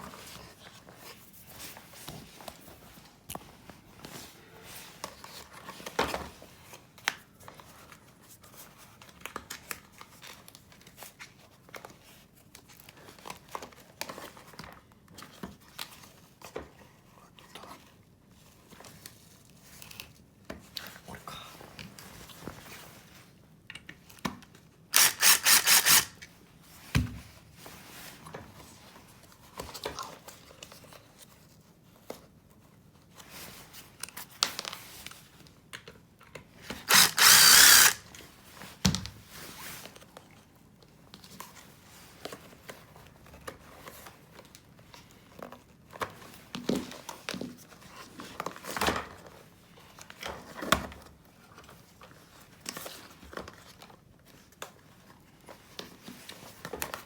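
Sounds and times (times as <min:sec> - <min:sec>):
power drill running: 0:25.0 - 0:26.3, 0:36.9 - 0:38.0.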